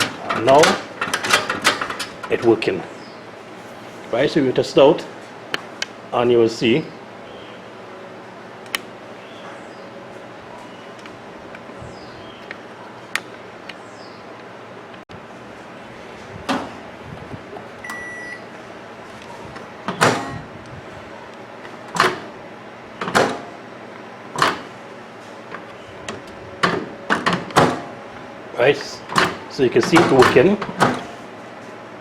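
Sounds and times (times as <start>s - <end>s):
short beep: 17.8s - 18.4s.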